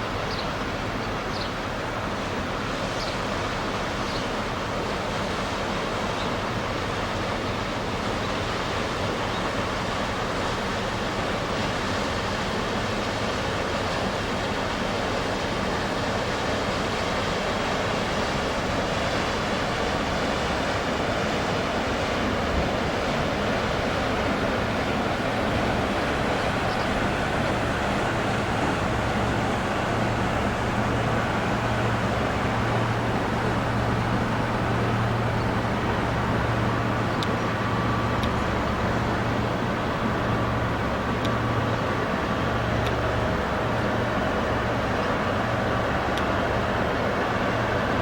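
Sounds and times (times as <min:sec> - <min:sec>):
ship engine hum: 0:00.0 - 0:48.0
water wash: 0:00.0 - 0:48.0.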